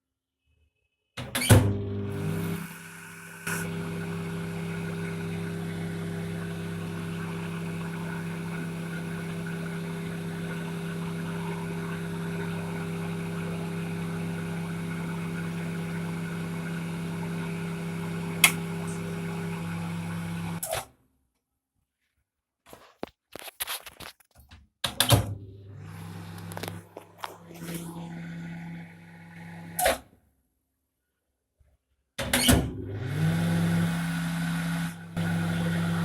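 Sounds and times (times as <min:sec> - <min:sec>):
microwave oven humming: 0:01.5 - 0:02.6, 0:03.5 - 0:20.6, 0:25.3 - 0:29.8, 0:32.7 - 0:36.0.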